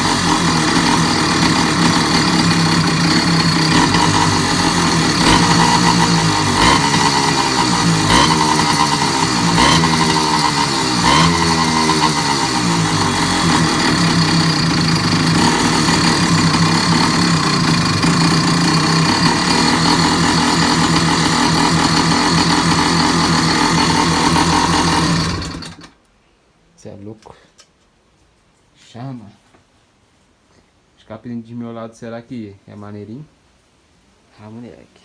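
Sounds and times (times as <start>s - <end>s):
moped engine revving: 0.0s - 25.9s.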